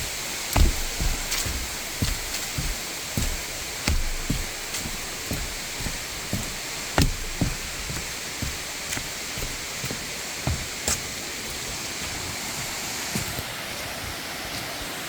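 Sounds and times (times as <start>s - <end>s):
rain: 0.0s - 15.0s
waterfall rushing: 0.0s - 15.0s
dull knocks: 0.4s - 11.1s.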